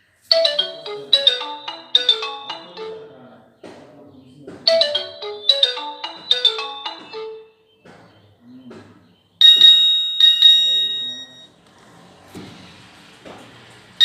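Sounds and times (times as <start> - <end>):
bright bell-like chime: 0.3 - 3.2, 4.7 - 7.6, 9.4 - 11.5
marimba-like ringtone notes: 0.3 - 3.3, 4.7 - 7.6, 9.4 - 11.5.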